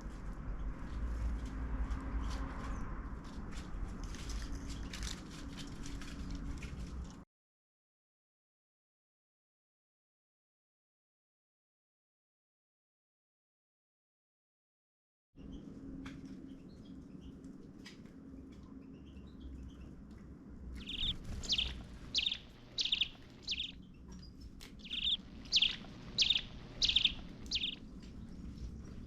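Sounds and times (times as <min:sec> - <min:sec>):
steady low hum: 0:20.0 - 0:29.0
small bird chirping: 0:20.8 - 0:29.0.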